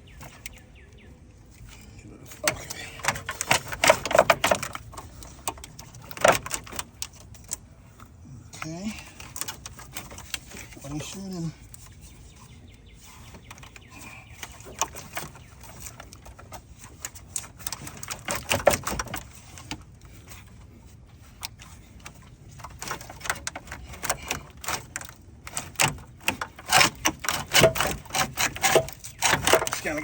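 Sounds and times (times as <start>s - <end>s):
metallic clicks and knocks: 2.4s - 7.6s, 13.3s - 20.4s, 21.4s - 30.0s.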